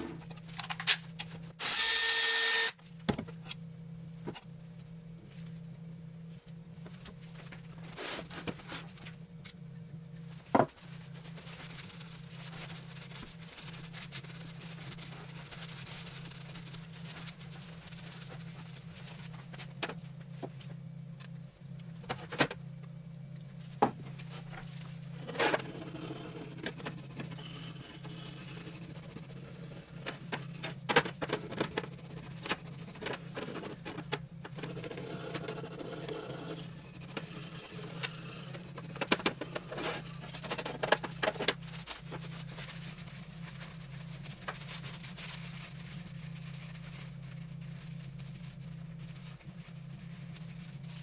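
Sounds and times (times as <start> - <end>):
steady low hum: 0.0 - 51.0.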